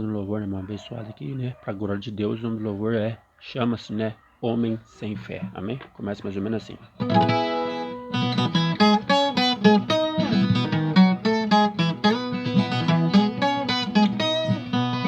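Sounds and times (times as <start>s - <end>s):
folk guitar picking: 7.0s - 15.0s.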